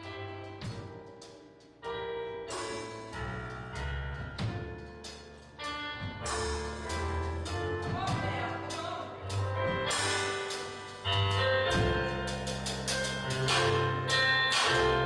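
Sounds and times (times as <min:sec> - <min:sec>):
instrumental music: 0:00.0 - 0:15.0.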